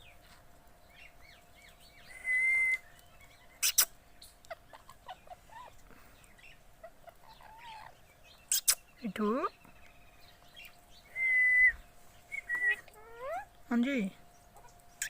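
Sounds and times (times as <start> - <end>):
parrots chirping: 2.6 - 9.0, 10.0 - 13.6.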